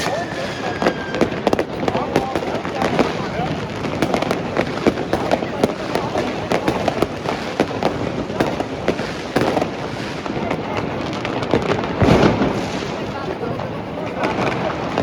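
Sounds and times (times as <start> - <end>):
fireworks and firecrackers banging: 0.0 - 15.0.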